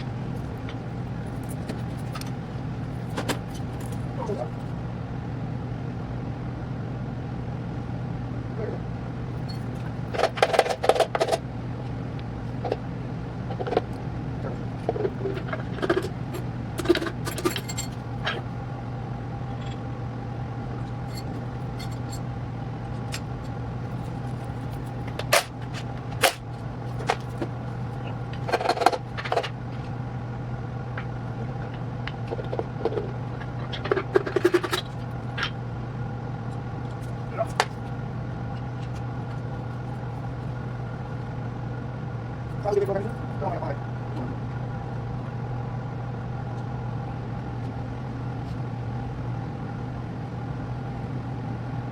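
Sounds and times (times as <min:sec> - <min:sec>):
steady low hum: 0:00.0 - 0:51.9
metal engine parts clinking: 0:00.4 - 0:04.1, 0:15.0 - 0:18.5, 0:20.9 - 0:22.3, 0:22.9 - 0:29.9.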